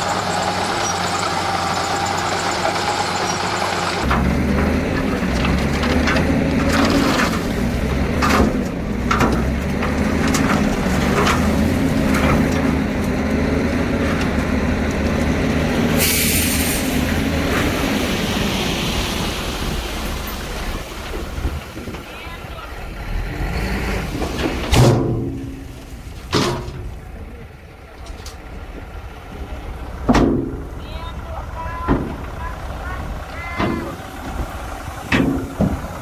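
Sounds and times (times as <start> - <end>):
diesel engine running: 0.0 - 36.0
machine clanks and knocks: 3.2 - 16.0, 24.2 - 27.1, 30.0 - 30.8, 31.8 - 36.0.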